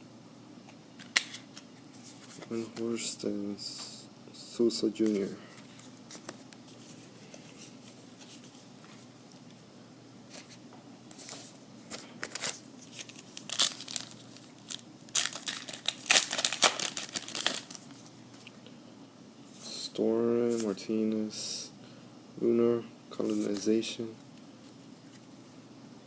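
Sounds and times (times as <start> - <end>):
wrapper tearing and crinkling: 12.2 - 18.0.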